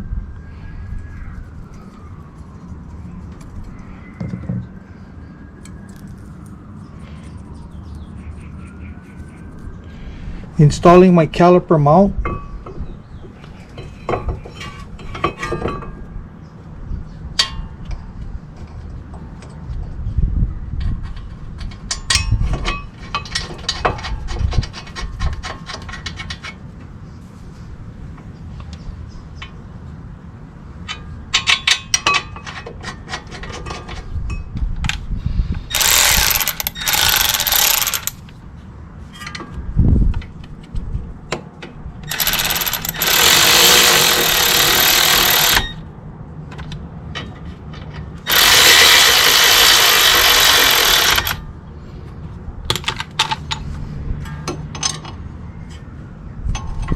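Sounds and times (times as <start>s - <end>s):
socket ratchet clicking: 35.7s - 38.2s, 42.1s - 45.8s, 48.3s - 51.4s.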